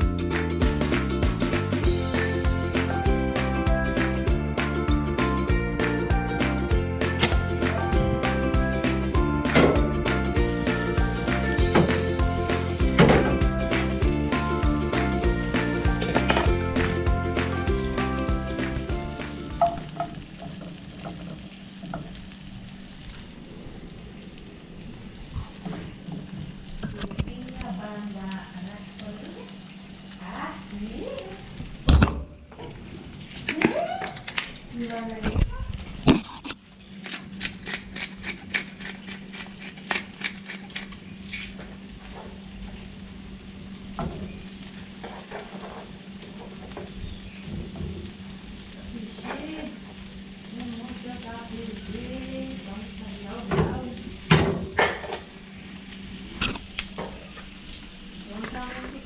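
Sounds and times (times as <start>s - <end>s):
food sizzling in a pan: 9.8s - 31.8s, 38.0s - 59.0s
utensil clicks: 56.4s - 57.3s.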